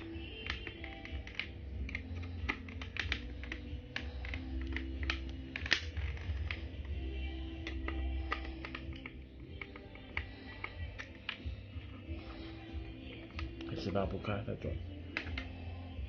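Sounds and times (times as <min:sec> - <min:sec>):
screwdriver turning screw clicks: 0:00.0 - 0:11.5.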